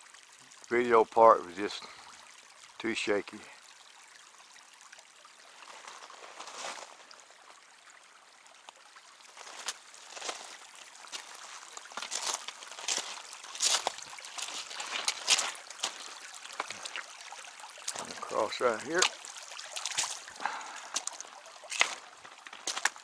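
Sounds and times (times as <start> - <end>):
creek water trickling over rocks: 0.0 - 23.0
sharp scuffs or splashes: 9.6 - 17.1, 17.8 - 23.0.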